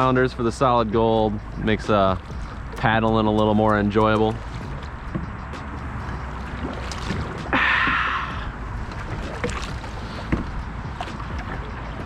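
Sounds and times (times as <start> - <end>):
low rumble of air and water: 0.0 - 12.0
paddle splashing through water: 1.4 - 12.0.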